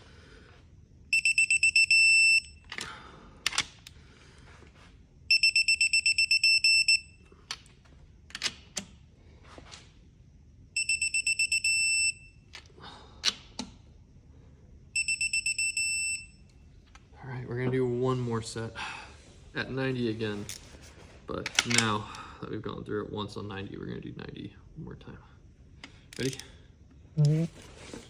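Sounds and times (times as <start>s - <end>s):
torque wrench beeping: 1.1s - 2.8s, 5.3s - 7.2s, 10.8s - 12.5s, 15.0s - 16.4s.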